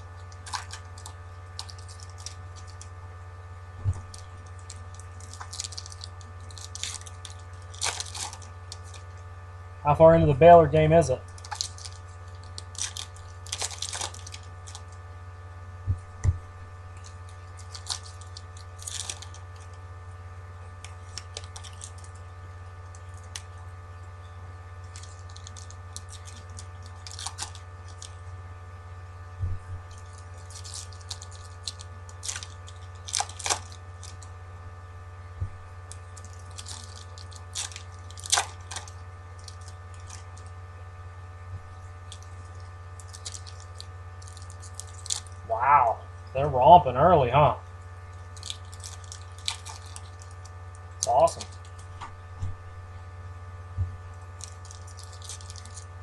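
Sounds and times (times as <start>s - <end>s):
foil wrappers tearing and crinkling: 0.0s - 9.3s, 11.2s - 15.3s, 16.0s - 20.0s, 20.7s - 23.7s, 24.7s - 28.4s, 29.8s - 34.5s, 35.7s - 40.6s, 41.6s - 45.5s, 47.9s - 52.0s, 54.0s - 56.0s
low hum: 0.0s - 56.0s.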